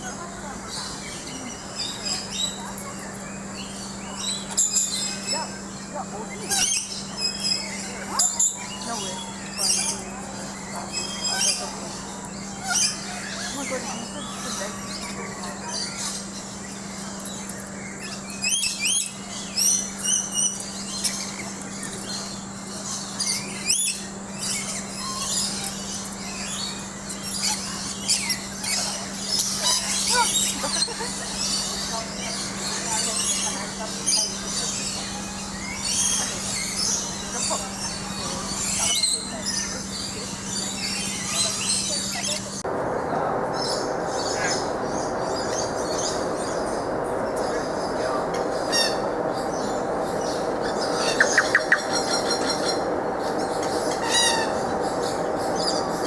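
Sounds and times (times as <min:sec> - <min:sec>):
birds chirping whistled calls: 0:00.0 - 0:56.0
steady low hum: 0:00.0 - 0:56.0
steady rushing noise: 0:42.6 - 0:56.0.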